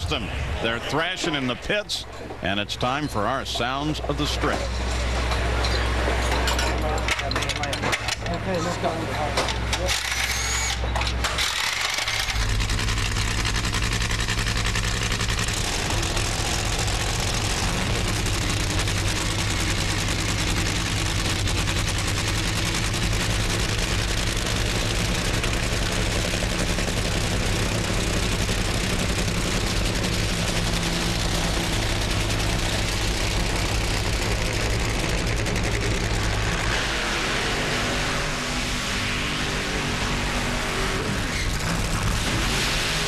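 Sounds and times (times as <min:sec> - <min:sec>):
race car engine idling: 0:12.1 - 0:36.7.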